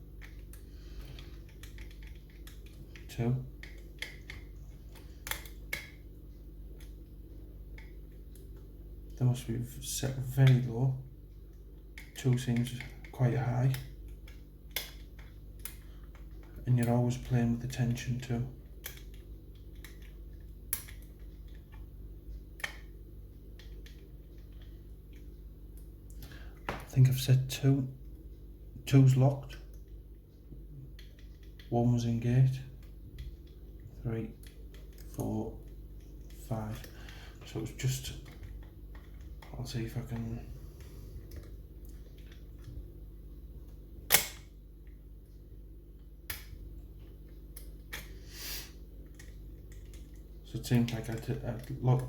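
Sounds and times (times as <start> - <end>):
low hum: 0.0 - 52.0
sharp metallic click: 44.1 - 44.5.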